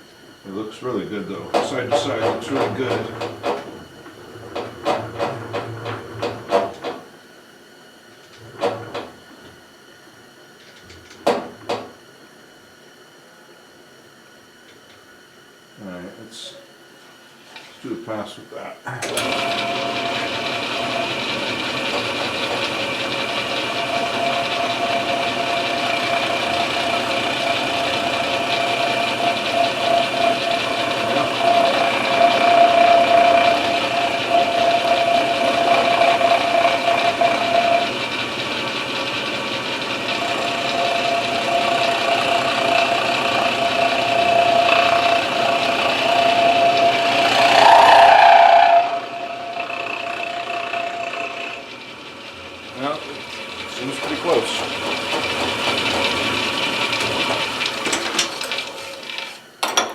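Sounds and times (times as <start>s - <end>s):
milling machine cutting wood: 1.2s - 7.1s, 19.0s - 59.7s.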